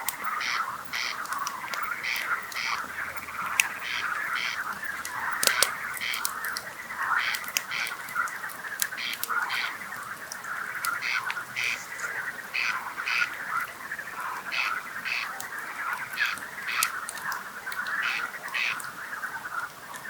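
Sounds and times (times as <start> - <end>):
campfire crackling: 0.0 - 20.0
frogs croaking: 0.0 - 20.0.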